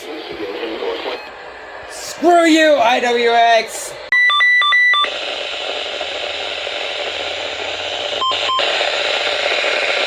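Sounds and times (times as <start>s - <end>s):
radio static hiss: 0.0s - 4.1s, 5.0s - 10.0s
electronic beeps: 4.1s - 5.1s, 8.2s - 8.7s.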